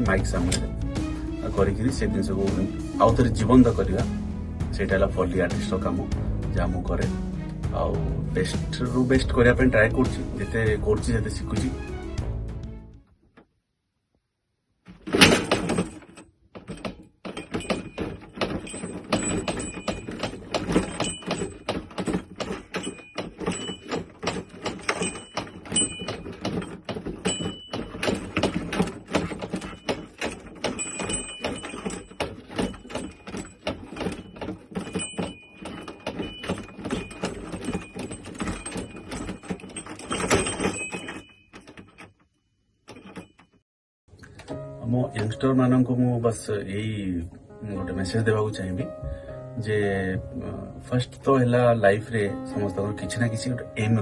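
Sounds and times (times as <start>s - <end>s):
knocks taps and clatter: 14.9s - 42.2s.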